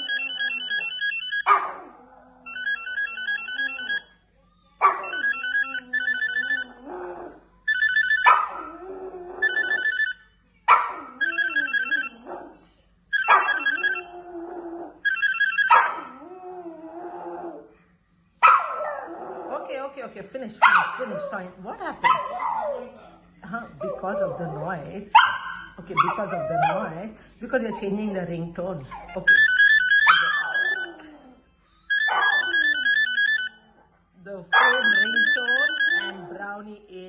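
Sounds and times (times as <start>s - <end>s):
electronic phone ringtone: 0.0s - 1.5s, 2.4s - 4.2s, 5.0s - 6.9s, 7.7s - 8.5s, 9.4s - 10.3s, 11.2s - 12.3s, 13.1s - 14.2s, 15.0s - 16.0s, 29.2s - 33.8s, 34.6s - 36.4s
dog howling and whining: 0.0s - 4.1s, 4.7s - 7.6s, 8.2s - 10.0s, 13.3s - 15.1s, 15.7s - 17.8s, 18.5s - 19.8s, 23.8s - 27.0s, 28.9s - 34.0s.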